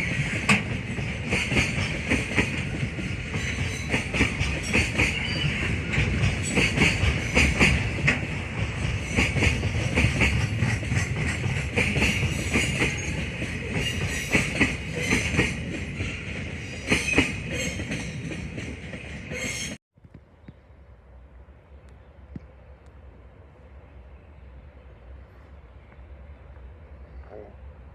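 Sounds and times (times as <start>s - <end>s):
train wheels knocking on rail joints: 0.0s - 19.6s.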